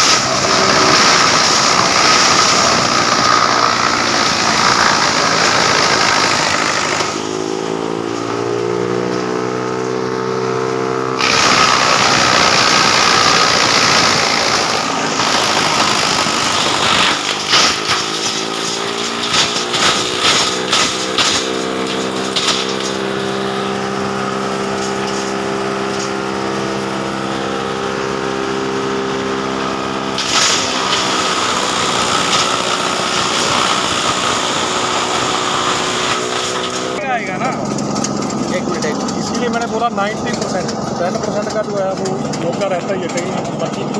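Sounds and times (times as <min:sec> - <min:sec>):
wood chipper running: 0:00.0 - 0:43.9
sharp knocks: 0:11.2 - 0:23.0.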